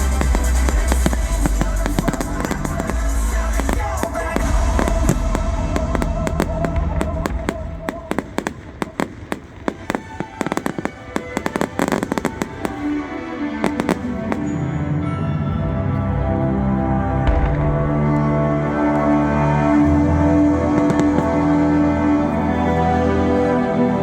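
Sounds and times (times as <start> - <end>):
fireworks crackling pops: 0.0 - 14.5, 20.8 - 21.5
loud music: 0.0 - 24.0.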